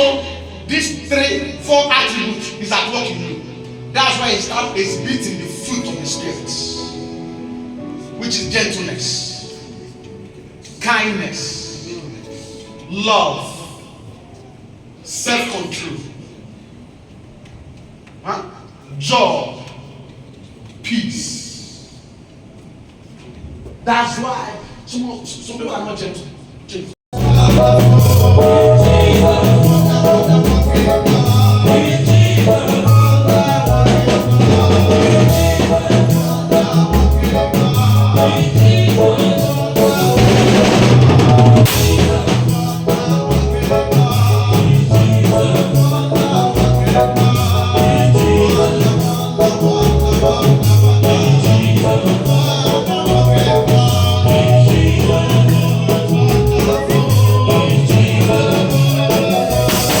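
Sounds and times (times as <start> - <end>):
worship song singing: 0.0 - 16.4, 27.2 - 60.0
drum kit: 27.2 - 60.0.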